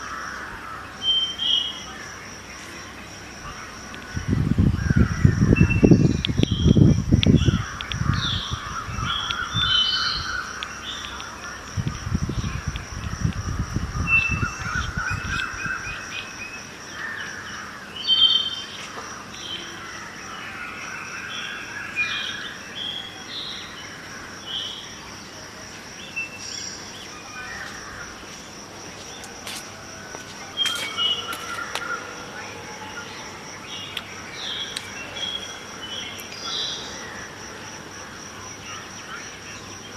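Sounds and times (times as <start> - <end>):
birds chirping and trilling: 0.2 - 25.4
wind buffeting microphone: 3.1 - 10.7, 11.4 - 16.9.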